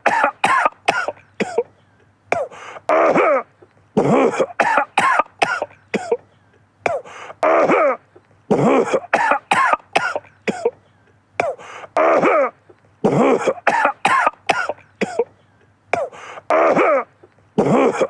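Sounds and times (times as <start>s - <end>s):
man coughing: 0.0s - 18.0s.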